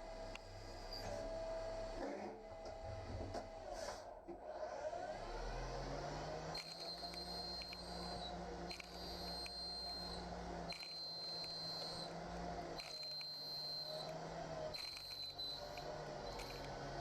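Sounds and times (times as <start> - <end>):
low machine hum: 0.0 - 4.3, 5.0 - 17.0
milling machine high whine: 6.5 - 17.0.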